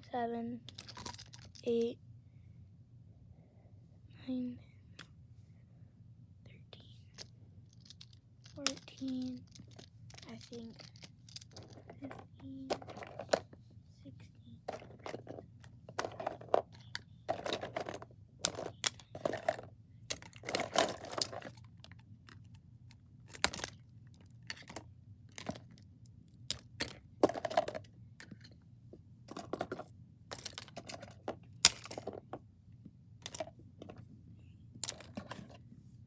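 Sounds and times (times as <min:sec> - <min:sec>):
small plastic objects clattering: 0:00.7 - 0:01.6, 0:07.7 - 0:13.5, 0:14.7 - 0:28.5, 0:29.3 - 0:32.4, 0:33.2 - 0:34.0, 0:34.8 - 0:35.6.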